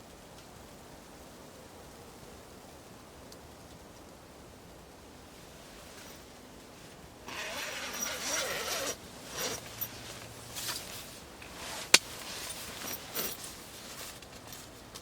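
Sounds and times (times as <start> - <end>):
faint steady hiss: 0.0 - 15.0
tent fabric rustling: 5.4 - 15.0.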